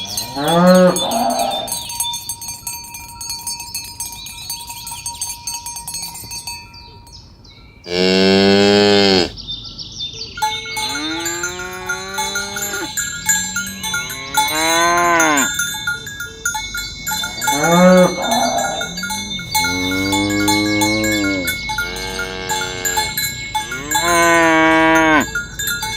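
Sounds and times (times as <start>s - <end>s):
cattle mooing: 0.0s - 1.8s, 7.9s - 9.3s, 10.8s - 15.5s, 17.4s - 25.3s
cow bells ringing: 0.0s - 8.6s, 10.3s - 25.9s.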